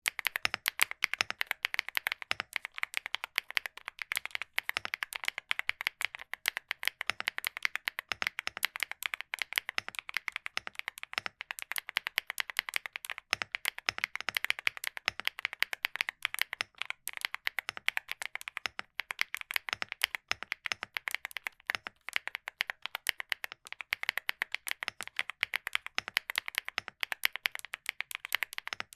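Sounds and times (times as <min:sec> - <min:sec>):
typing on mechanical keyboard: 0:00.0 - 0:28.9.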